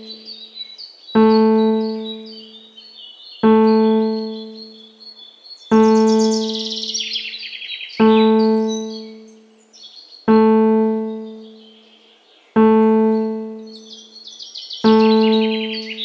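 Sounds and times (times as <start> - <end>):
low piano note ringing: 0.0 - 0.3, 1.2 - 2.5, 3.4 - 4.7, 5.7 - 6.9, 8.0 - 9.4, 10.3 - 11.6, 12.6 - 13.9, 14.9 - 16.0
small birds chirping: 0.0 - 16.0.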